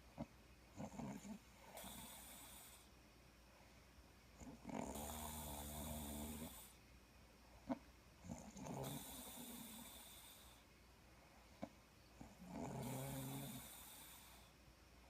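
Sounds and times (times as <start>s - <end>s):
buzzing snore: 0.2s - 2.9s, 4.4s - 6.8s, 7.6s - 10.6s, 11.6s - 14.5s.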